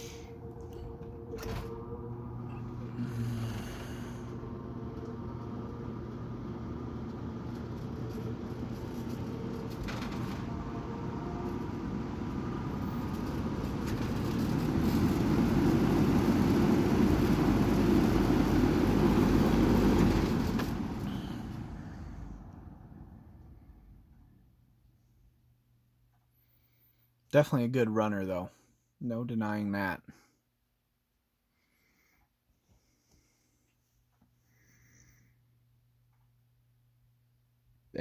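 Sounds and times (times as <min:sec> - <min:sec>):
box fan rush of air: 0:00.0 - 0:24.4.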